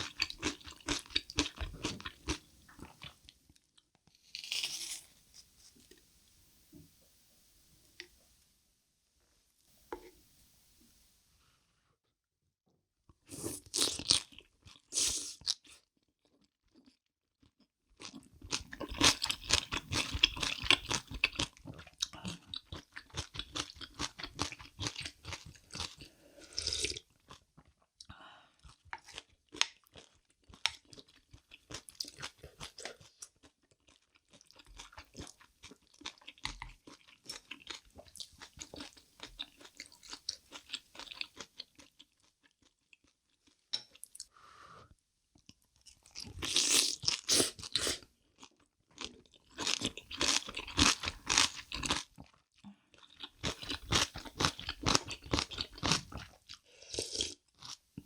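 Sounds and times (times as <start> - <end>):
crunching and chewing food: 0.0 - 6.0, 13.3 - 44.3, 45.3 - 58.0.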